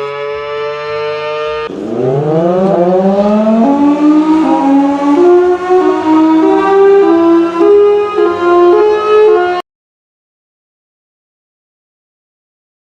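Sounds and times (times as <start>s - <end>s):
warning siren winding up: 0.0s - 9.6s.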